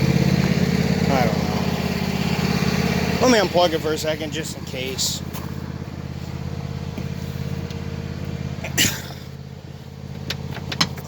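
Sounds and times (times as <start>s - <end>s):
small engine idling: 0.0s - 11.0s.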